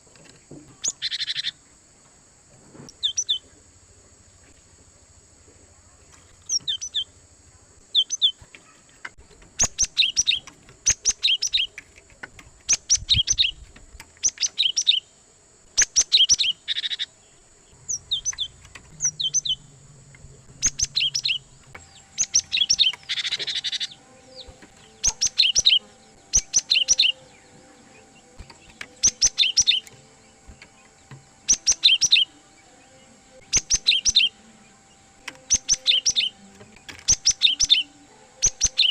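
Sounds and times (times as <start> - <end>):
harsh buzzy bird calls: 0.0 - 2.0, 2.8 - 38.9
tit high chirps: 20.5 - 32.4, 33.4 - 34.5, 35.2 - 38.9.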